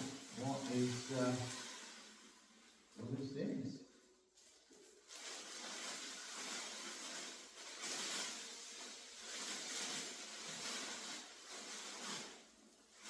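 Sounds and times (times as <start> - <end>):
packaging rustling: 4.0 - 13.0.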